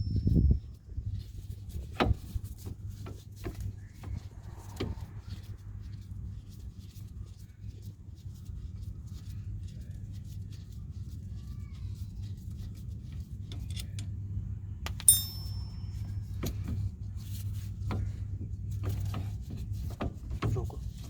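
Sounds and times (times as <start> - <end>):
low hum: 14.3 - 16.5
metal tools clinking: 14.9 - 16.4
ringing metallic clink: 15.0 - 16.4.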